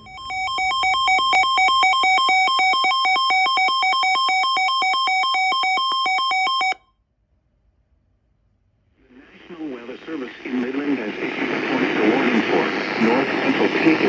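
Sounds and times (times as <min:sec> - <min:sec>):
warbling alert tone: 0:00.0 - 0:03.8.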